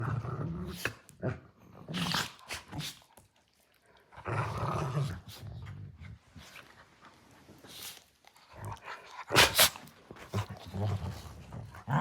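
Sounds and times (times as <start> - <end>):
dogs play growling: 0.0 - 12.0
dog sneezing: 9.4 - 9.8.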